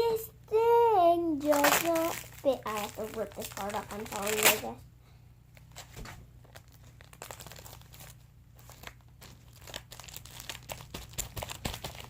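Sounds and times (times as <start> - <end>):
cardboard ripping and crumpling: 1.4 - 4.8, 6.5 - 12.0.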